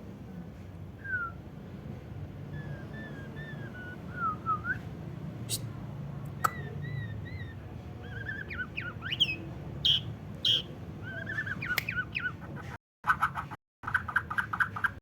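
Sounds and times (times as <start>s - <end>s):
bird singing whistled notes: 2.5s - 4.8s, 6.4s - 12.3s.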